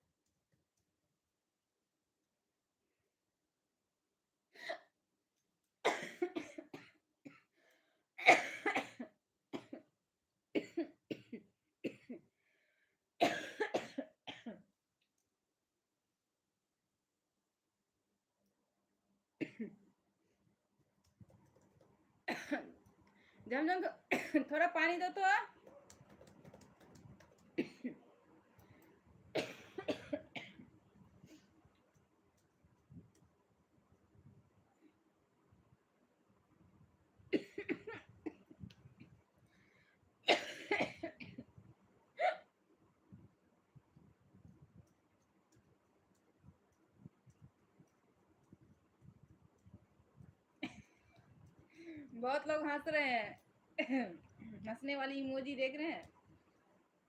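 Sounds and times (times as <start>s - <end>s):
person coughing: 5.9s - 7.5s, 8.2s - 9.9s, 13.2s - 14.6s, 27.6s - 28.0s, 29.4s - 30.6s, 40.3s - 41.4s.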